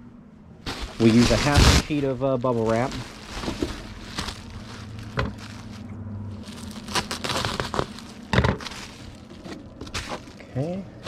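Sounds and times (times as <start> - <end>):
bubble wrap crinkling: 0.6 - 11.0
sharp crackles or knocks: 2.6 - 5.9.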